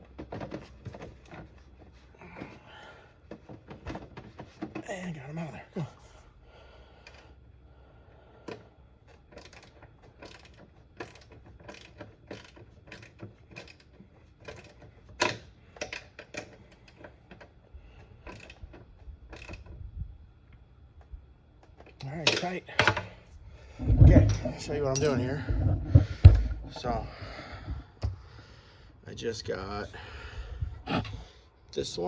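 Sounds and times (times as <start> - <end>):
wrench ratcheting metallic clicks: 9.3 - 17.0, 19.3 - 19.7.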